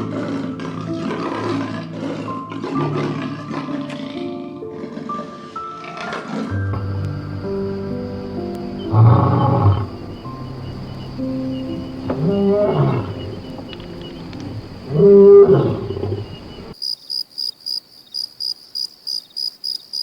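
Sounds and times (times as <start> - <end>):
big cat calling: 0.0 - 16.8
high insect whine: 6.8 - 20.0
insect chirping: 6.8 - 20.0.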